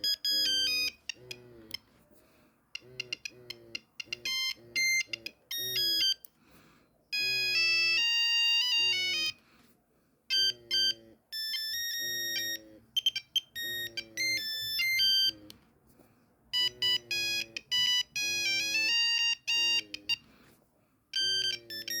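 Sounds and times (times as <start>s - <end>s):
monophonic phone ringtone: 0.0s - 1.9s, 2.7s - 6.3s, 7.1s - 9.4s, 10.3s - 15.5s, 16.5s - 20.3s, 21.1s - 22.0s.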